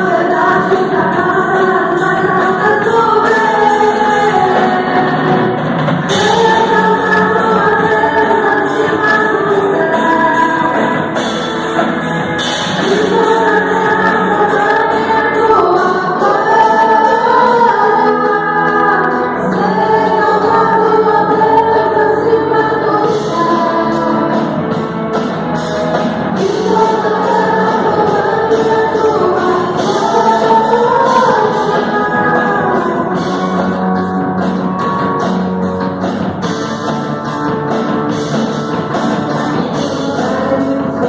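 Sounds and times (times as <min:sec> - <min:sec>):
rhythmic beat: 0:00.0 - 0:21.8
group singing gospel song: 0:00.0 - 0:35.2, 0:39.2 - 0:41.0.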